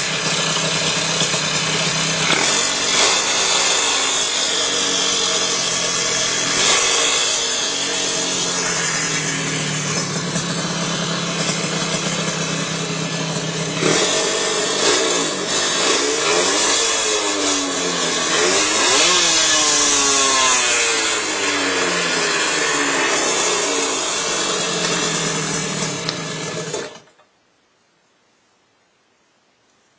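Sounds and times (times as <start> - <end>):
motorcycle engine idling and revving: 0.0 - 27.1.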